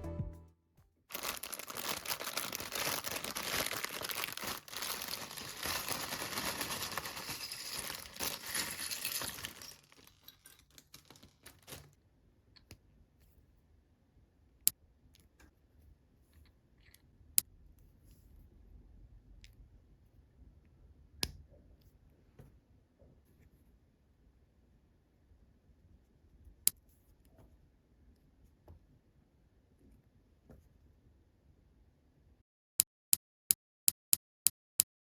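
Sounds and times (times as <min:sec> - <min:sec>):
plastic bag rustling: 0:01.1 - 0:11.9
plastic pieces clicking: 0:01.1 - 0:11.9.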